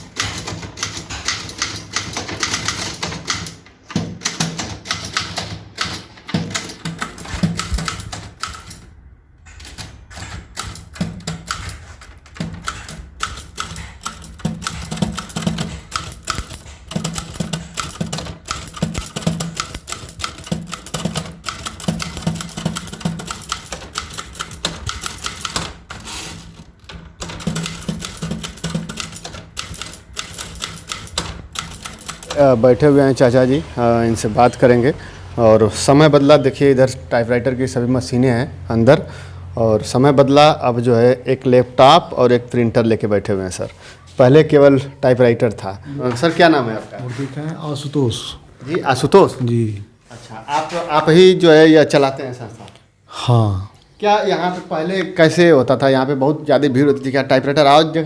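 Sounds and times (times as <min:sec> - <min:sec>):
typewriter key clatter: 0:00.0 - 0:08.9, 0:09.5 - 0:32.4.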